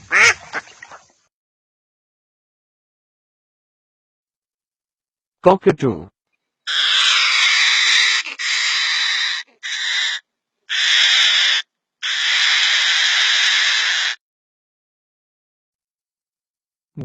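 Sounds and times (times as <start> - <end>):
cockatoo screeching: 6.7 - 14.2.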